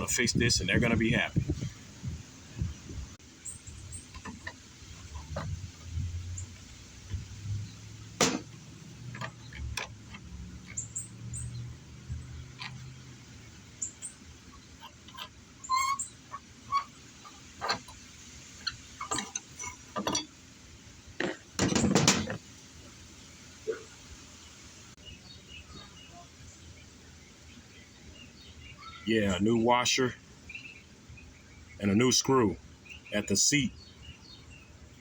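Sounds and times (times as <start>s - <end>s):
birds chirping faintly: 0.0s - 35.0s
rattle of knocks: 4.0s - 6.4s, 7.0s - 11.0s, 16.2s - 20.4s, 21.2s - 22.5s
hand tools clicking and scraping metal: 8.2s - 11.0s, 14.7s - 20.4s.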